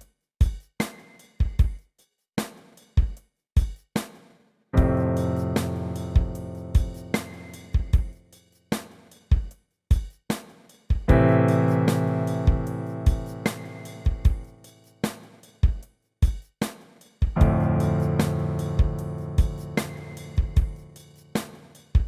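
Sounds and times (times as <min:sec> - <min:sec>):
drum beat kick and snare: 0:00.0 - 0:22.0
keyboard chord: 0:17.4 - 0:20.8.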